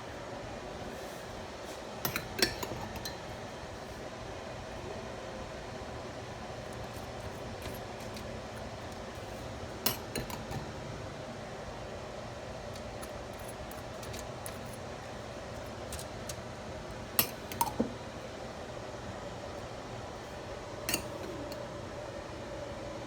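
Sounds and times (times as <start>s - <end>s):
steady hum: 0.0s - 23.0s
utensils clinking against dishes: 2.0s - 3.2s, 9.8s - 10.7s, 17.2s - 17.9s, 20.9s - 21.6s.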